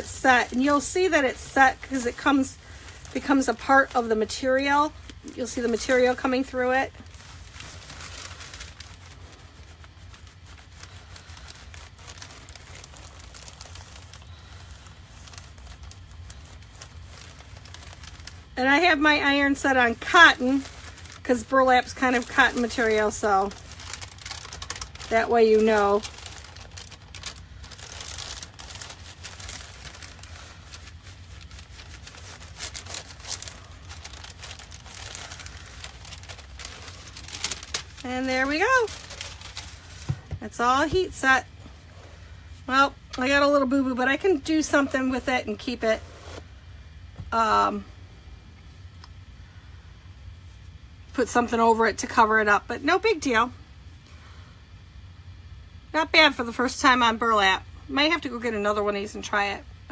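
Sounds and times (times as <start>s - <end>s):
paper rustling under an iron: 0.0s - 46.6s
steady low hum: 0.0s - 59.9s.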